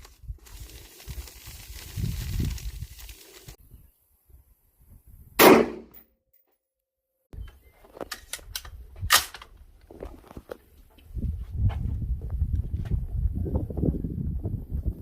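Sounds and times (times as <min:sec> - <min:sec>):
gunshots: 0:05.4 - 0:06.0.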